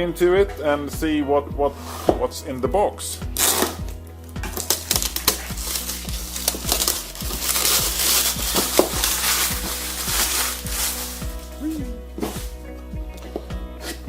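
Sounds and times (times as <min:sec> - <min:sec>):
background music: 0:00.0 - 0:14.0
packaging crinkling and rustling: 0:03.4 - 0:12.5.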